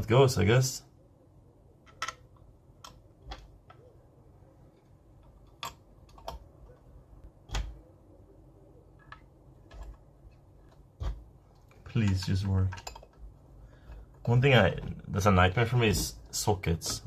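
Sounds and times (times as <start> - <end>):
computer hardware clicks and taps: 1.8 - 3.9, 5.1 - 7.8, 9.0 - 15.0.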